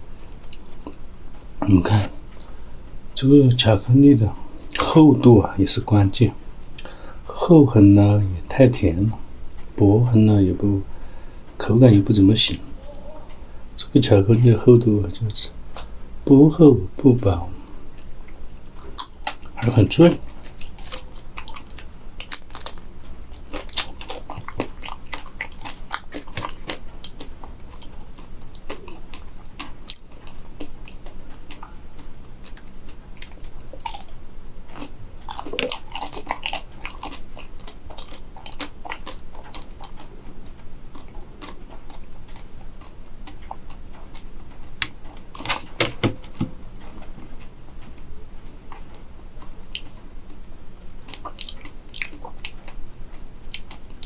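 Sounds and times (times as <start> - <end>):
chocolate shell crunching: 19.0 - 40.1.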